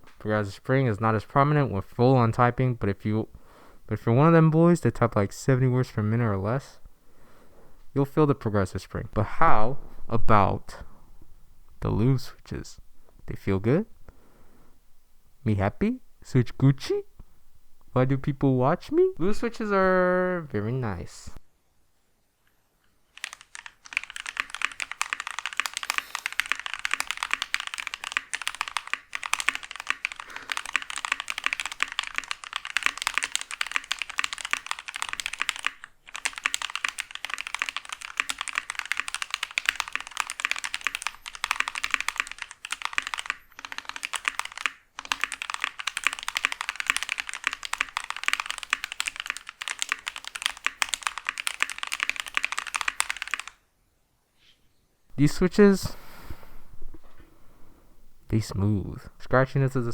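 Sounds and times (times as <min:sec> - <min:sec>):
mechanical keyboard typing: 0:23.1 - 0:53.6.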